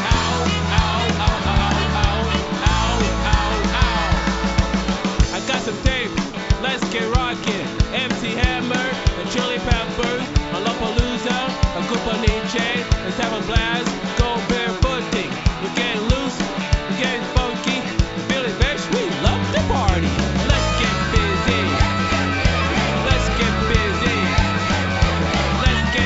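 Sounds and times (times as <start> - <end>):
rock music: 0.0 - 26.0
steady drum beat: 0.0 - 26.0.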